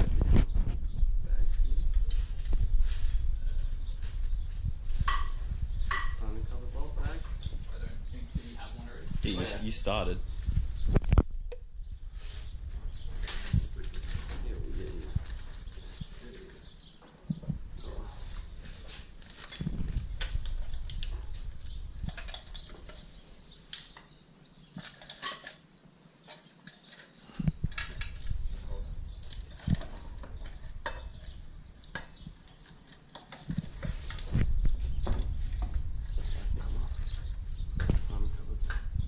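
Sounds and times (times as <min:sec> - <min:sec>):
metal tools clinking: 0:02.0 - 0:03.1, 0:09.2 - 0:10.1, 0:13.2 - 0:14.8, 0:19.3 - 0:20.8.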